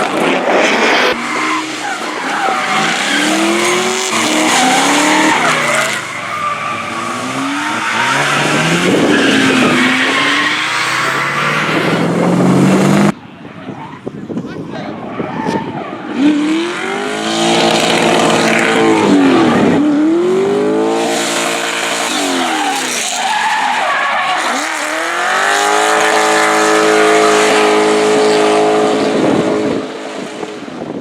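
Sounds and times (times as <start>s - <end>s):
car engine revving hard: 0.0s - 13.1s, 16.2s - 23.3s, 24.4s - 30.4s
tyres squealing: 1.2s - 13.1s, 21.9s - 27.9s.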